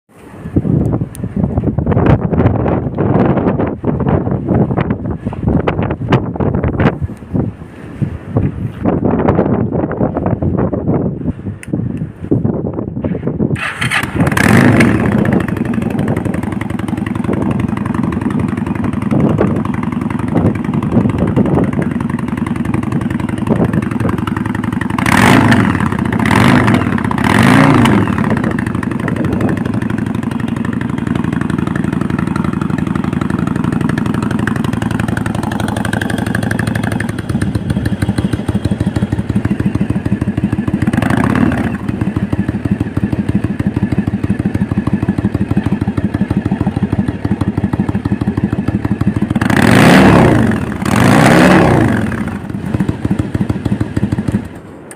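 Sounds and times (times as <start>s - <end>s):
motorcycle engine idling and revving: 8.3s - 54.9s.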